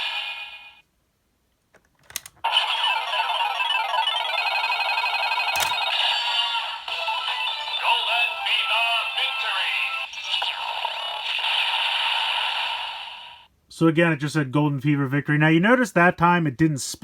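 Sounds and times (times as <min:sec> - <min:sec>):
plastic toy clicks: 0:01.8 - 0:02.4, 0:05.6 - 0:05.8
tinny electronic music from toy: 0:02.4 - 0:13.4
synthesized voice calling out: 0:02.5 - 0:03.9, 0:06.1 - 0:11.3.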